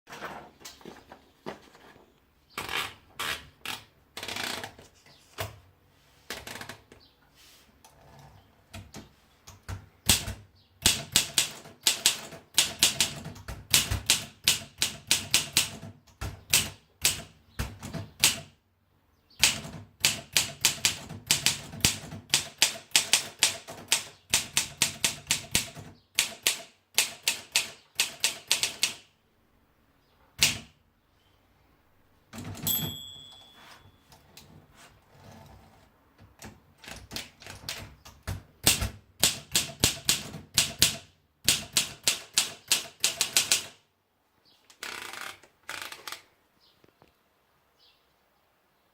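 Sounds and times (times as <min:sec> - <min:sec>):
manual typewriter clacking: 0:08.7 - 0:18.5, 0:19.4 - 0:29.0, 0:36.4 - 0:43.8.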